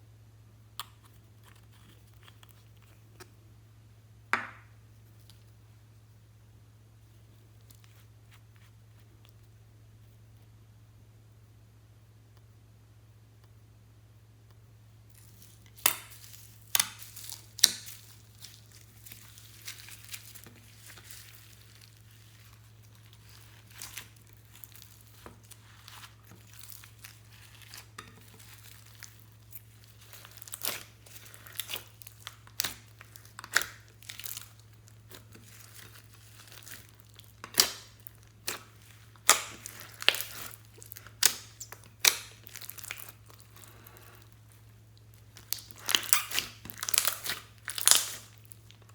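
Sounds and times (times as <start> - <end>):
slime crackling and popping: 15.1 - 48.9.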